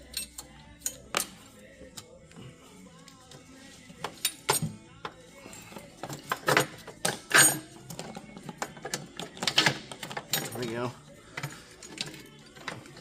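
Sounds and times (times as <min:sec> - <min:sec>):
metal parts clinking and clanking: 0:06.0 - 0:13.0.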